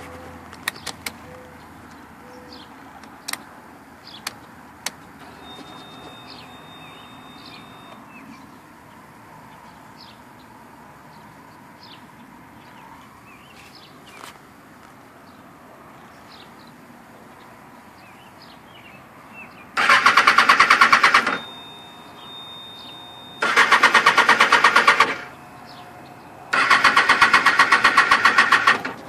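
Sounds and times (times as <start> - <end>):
birds chirping: 5.2 - 10.5, 20.9 - 27.0
short high steady tone: 5.3 - 8.0, 21.1 - 24.5.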